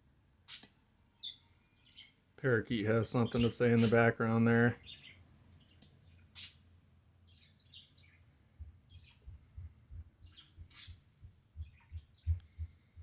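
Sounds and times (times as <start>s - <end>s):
parakeet chirping: 4.8s - 6.6s, 10.2s - 11.0s.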